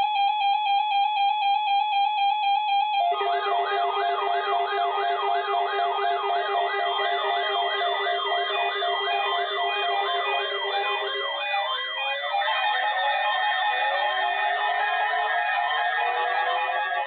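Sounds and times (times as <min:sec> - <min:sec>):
electronic siren-like warble: 0:01.5 - 0:13.8.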